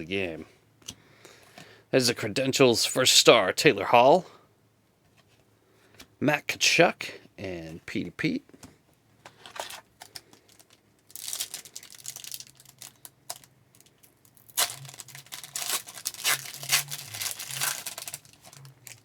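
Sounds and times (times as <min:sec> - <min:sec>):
wrapper tearing and crinkling: 0:09.5 - 0:19.0.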